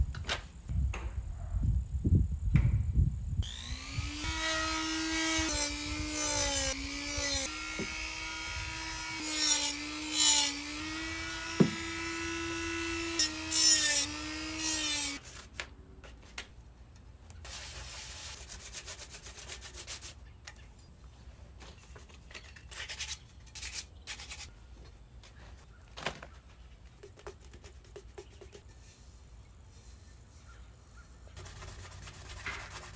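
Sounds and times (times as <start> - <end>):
electric sander humming: 3.4 - 15.2
scratchy hand sanding strokes: 3.5 - 15.3, 17.5 - 20.2, 27.0 - 32.9.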